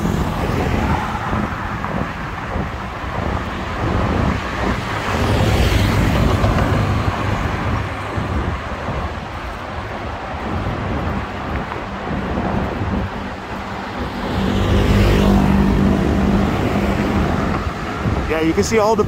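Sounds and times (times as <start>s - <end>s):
road traffic rumble: 0.0s - 19.0s
vehicle passing close: 0.0s - 19.0s.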